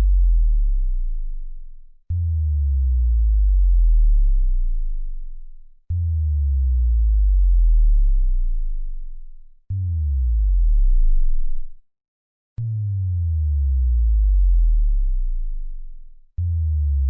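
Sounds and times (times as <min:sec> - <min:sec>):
synthesized bass drop: 0:09.8 - 0:11.7.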